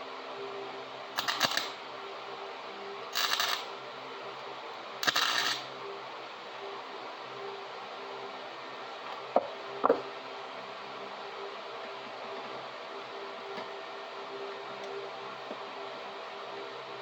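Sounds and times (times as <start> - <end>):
steady electrical hum: 0.0 - 17.0
wire welder crackling: 1.2 - 1.8, 3.1 - 3.7, 5.0 - 5.7.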